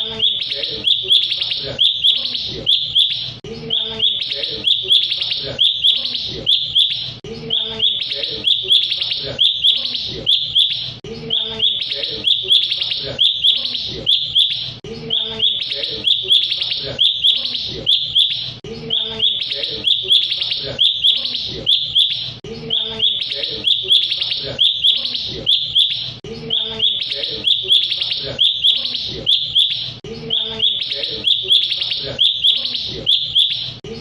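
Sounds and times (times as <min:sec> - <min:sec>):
songbird chirping: 0:00.0 - 0:33.8.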